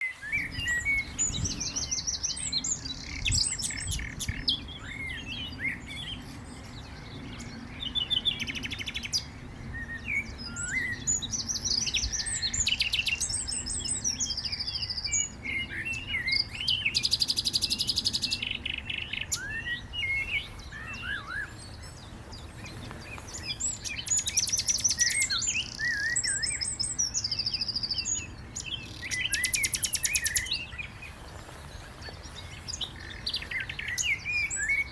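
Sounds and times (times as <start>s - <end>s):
nightingale singing: 0.0s - 34.9s.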